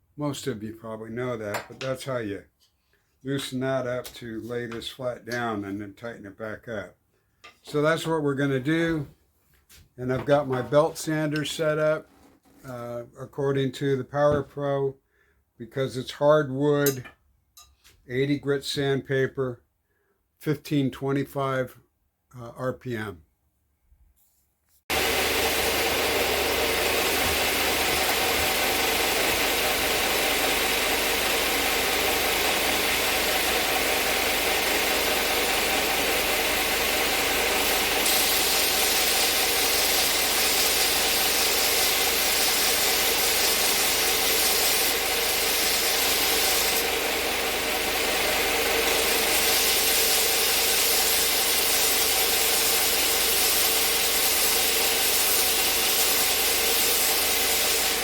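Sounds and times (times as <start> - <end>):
belt sander sanding wood: 24.9 - 58.0.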